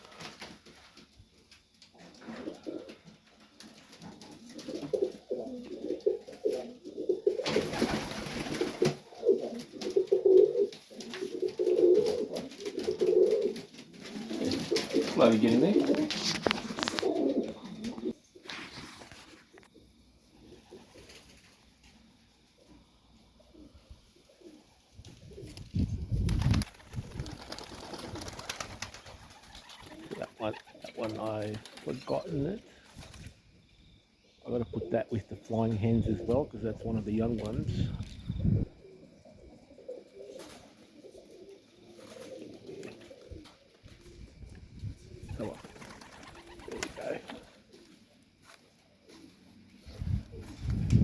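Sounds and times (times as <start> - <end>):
pigeons cooing: 2.0 - 18.3, 19.8 - 21.3, 22.4 - 33.0, 34.5 - 51.0
rustling noise: 10.8 - 19.8, 46.3 - 51.0.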